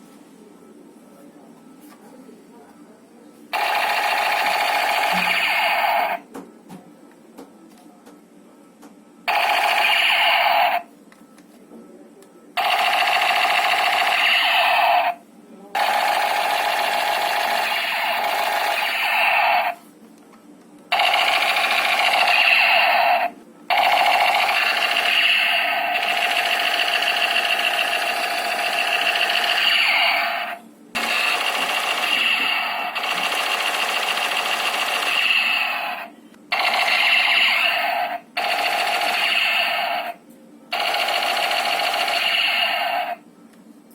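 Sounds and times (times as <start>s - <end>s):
toy gun warbling electronic buzz: 3.6s - 6.2s, 9.3s - 10.9s, 12.6s - 15.2s, 15.8s - 19.8s, 20.9s - 40.2s, 40.8s - 43.2s.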